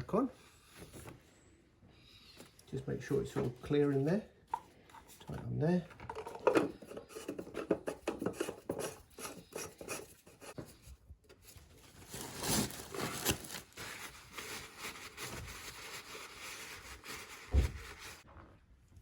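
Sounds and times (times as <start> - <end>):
cap rubbing and scraping: 6.1 - 10.6.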